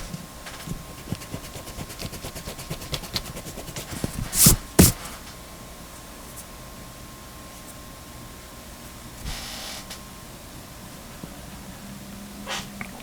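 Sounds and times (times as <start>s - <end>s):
eraser rubbing on paper: 0.6s - 5.2s.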